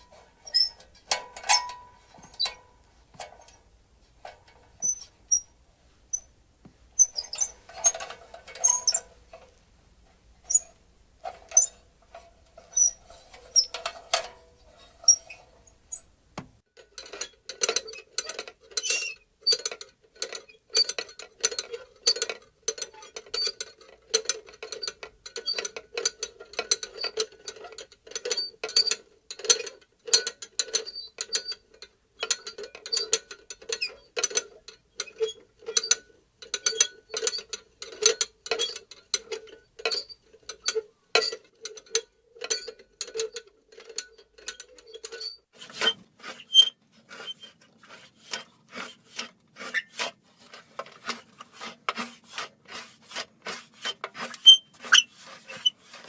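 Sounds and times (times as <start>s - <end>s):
metal lantern squeaking and clinking: 0.0s - 6.3s, 7.0s - 9.5s, 10.4s - 11.8s, 12.4s - 16.2s, 18.8s - 19.2s, 39.9s - 41.4s, 42.5s - 47.6s, 54.4s - 55.8s.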